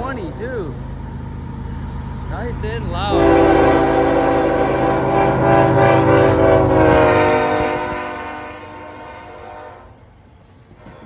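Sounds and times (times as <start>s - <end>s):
train rumble: 0.0s - 11.0s
locomotive air horn: 3.1s - 10.1s.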